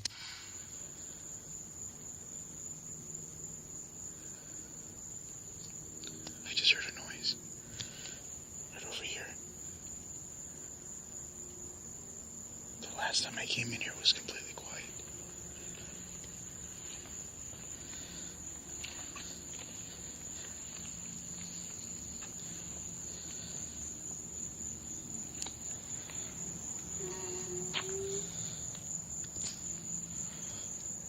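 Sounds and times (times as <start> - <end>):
crickets chirping: 0.0 - 31.0
faint clicks: 5.6 - 6.4.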